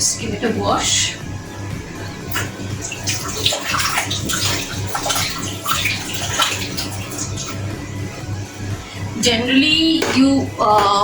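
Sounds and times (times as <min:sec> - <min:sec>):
tap water running and splashing: 0:01.8 - 0:09.2.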